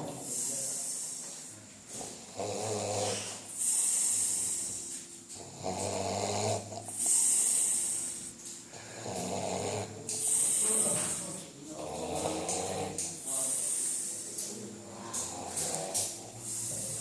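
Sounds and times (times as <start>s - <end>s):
person snoring: 1.9s - 17.0s.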